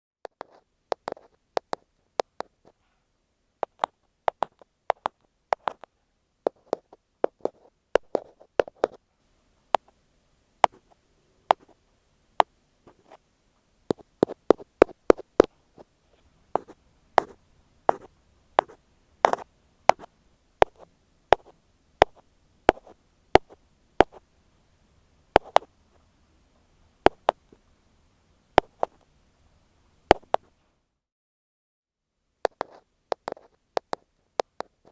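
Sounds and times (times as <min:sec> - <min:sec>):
ear pick tapping on earphone: 0:00.2 - 0:02.6, 0:03.6 - 0:05.9, 0:06.5 - 0:09.0, 0:10.6 - 0:11.8, 0:13.9 - 0:15.6, 0:16.6 - 0:24.2, 0:25.4 - 0:25.7, 0:27.0 - 0:27.6, 0:28.6 - 0:29.1, 0:30.1 - 0:30.5, 0:32.4 - 0:34.9.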